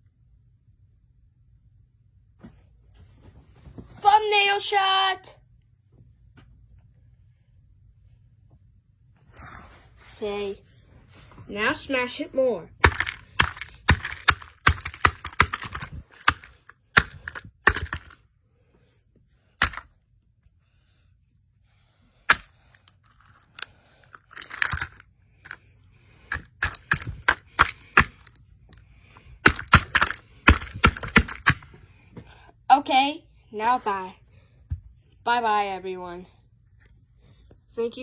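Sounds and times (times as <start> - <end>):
plastic toy being smashed: 12.8 - 18.2, 19.6 - 19.9, 22.3 - 25.6, 26.3 - 28.3, 29.3 - 31.8.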